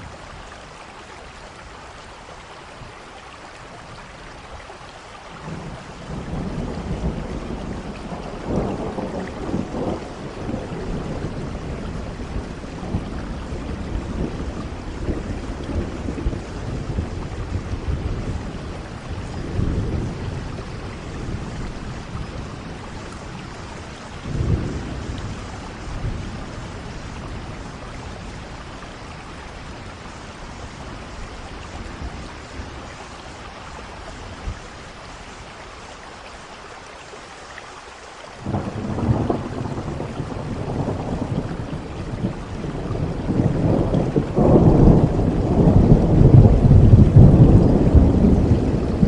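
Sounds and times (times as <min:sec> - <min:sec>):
steady rain falling: 0:00.0 - 0:49.0
rolling thunder: 0:05.4 - 0:33.0, 0:38.4 - 0:49.0
sharp thunder clap: 0:38.4 - 0:49.0.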